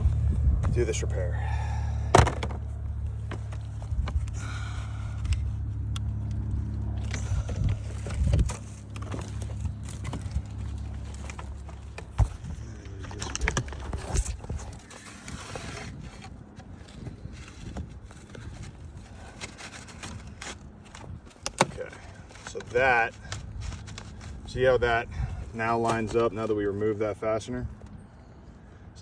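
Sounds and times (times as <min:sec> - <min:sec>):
steady low rumble: 0:00.0 - 0:29.0
hand tools scraping wood: 0:07.0 - 0:24.7.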